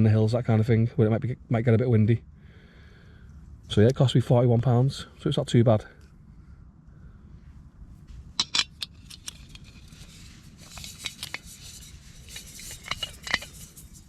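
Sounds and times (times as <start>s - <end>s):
rustling: 7.9s - 14.0s
metal camp gear clinking: 8.4s - 14.0s.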